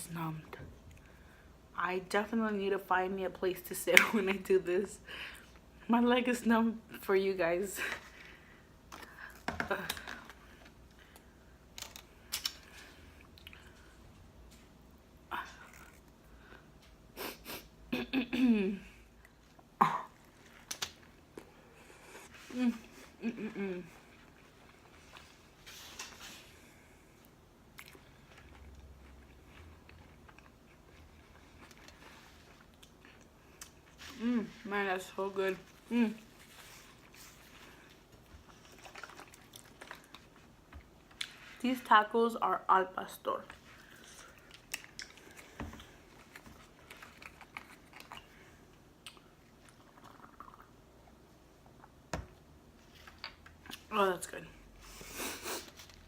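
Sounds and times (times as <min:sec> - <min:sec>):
person chewing food: 0:08.0 - 0:17.1, 0:26.8 - 0:34.2, 0:35.6 - 0:41.6, 0:43.5 - 0:53.9.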